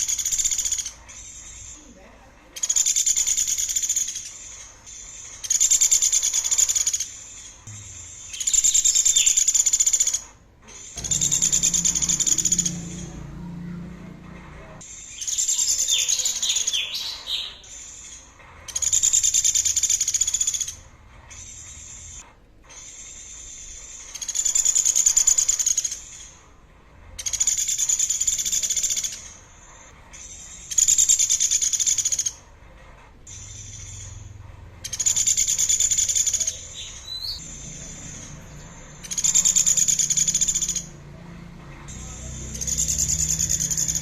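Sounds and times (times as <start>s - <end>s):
thin steady high tone: 10.8s - 18.1s
songbird buzzy high trill: 10.9s - 17.7s.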